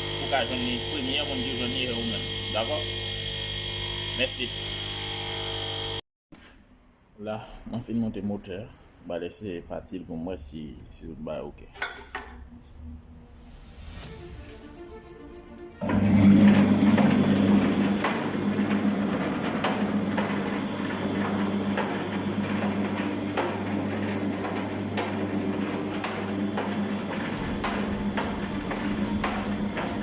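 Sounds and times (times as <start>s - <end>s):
concrete mixer motor humming: 0.0s - 6.0s, 15.8s - 30.0s
mixer clicks and knocks: 15.8s - 30.0s.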